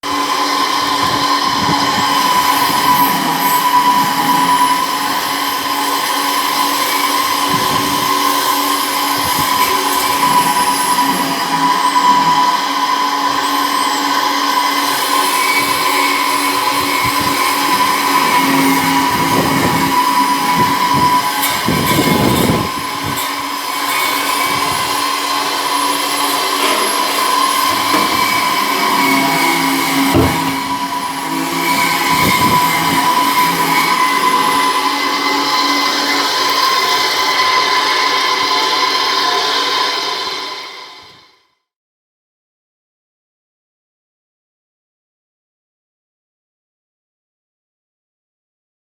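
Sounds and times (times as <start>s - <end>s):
press machine droning: 0.1s - 37.7s
high whine: 0.1s - 41.1s
rushing noise: 7.2s - 40.4s.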